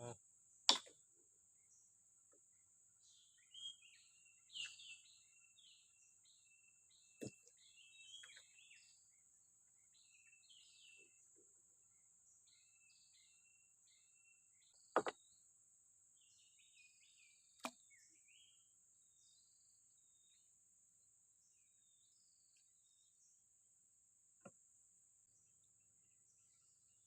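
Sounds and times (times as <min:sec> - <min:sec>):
insect drone: 0:02.5 - 0:11.3, 0:11.9 - 0:27.0
bird chirps: 0:03.0 - 0:09.2, 0:09.8 - 0:15.5, 0:16.1 - 0:20.5.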